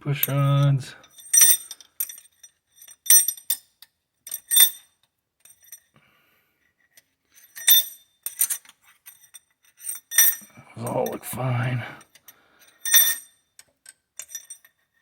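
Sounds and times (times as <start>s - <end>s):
metal pushrods clinking: 0.2s - 3.6s, 14.2s - 14.7s.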